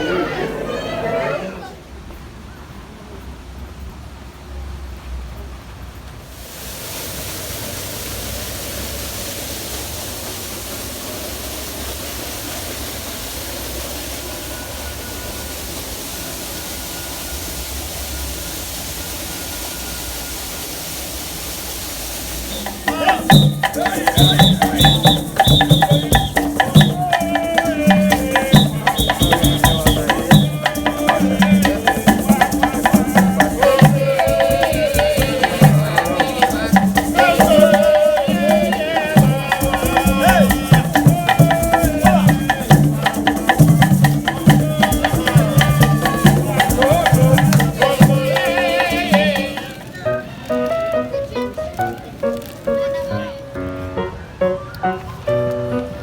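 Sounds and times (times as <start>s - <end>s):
hand drums and shakers music: 22.4s - 50.8s.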